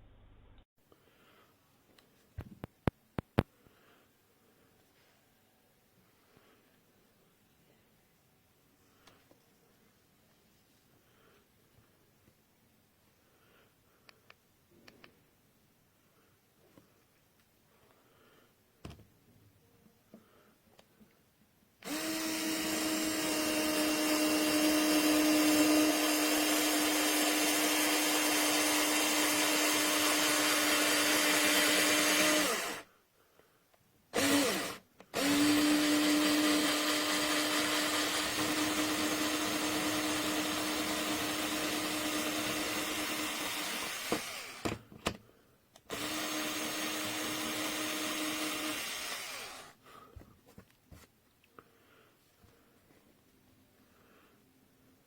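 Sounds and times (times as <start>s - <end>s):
electric screwdriver motor whirring: 21.8s - 32.8s, 34.2s - 44.8s, 45.9s - 49.8s.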